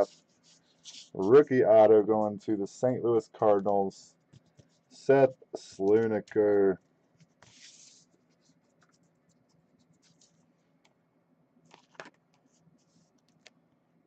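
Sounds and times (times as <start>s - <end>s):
tabletop handling noises: 0.0s - 1.6s, 3.5s - 5.0s, 5.6s - 10.5s, 11.7s - 13.6s
faint scratching: 0.0s - 10.6s.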